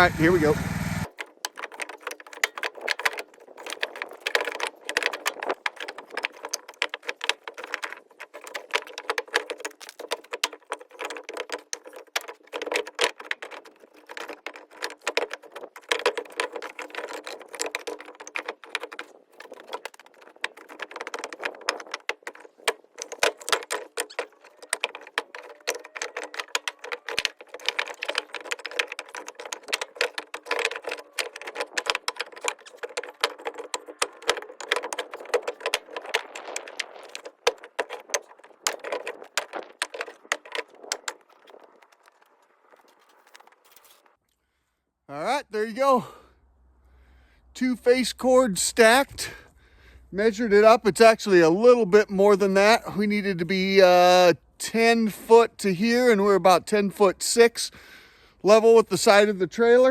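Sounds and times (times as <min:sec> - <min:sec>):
firewood pieces clattering: 0:01.0 - 0:44.1.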